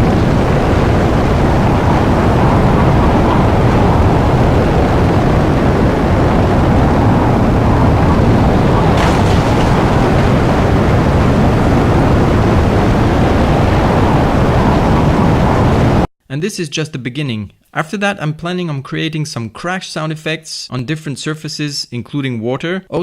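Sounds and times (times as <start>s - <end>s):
deep rumbling: 0.0s - 16.1s
rocket thruster: 0.0s - 16.1s.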